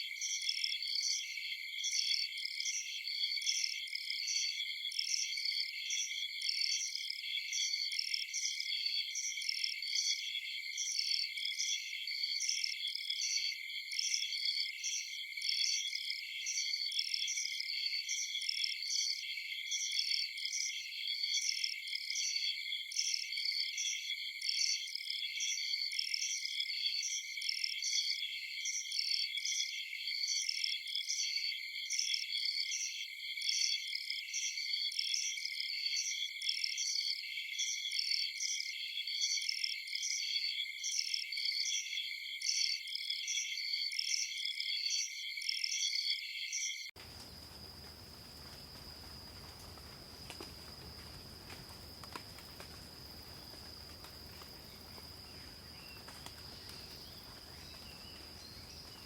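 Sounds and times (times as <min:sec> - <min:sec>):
high-pitched insect chirp: 0:34.4 - 0:59.0
crickets and insects trilling: 0:47.0 - 0:59.0.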